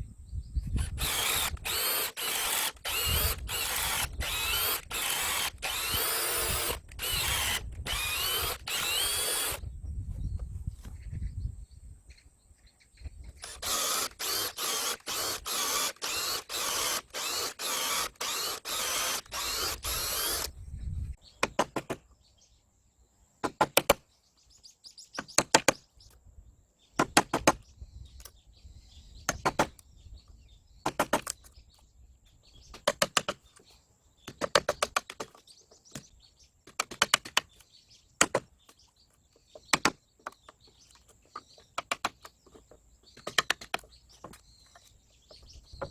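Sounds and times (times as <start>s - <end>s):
hand tool rasping wood: 0.8s - 9.6s, 13.4s - 20.5s.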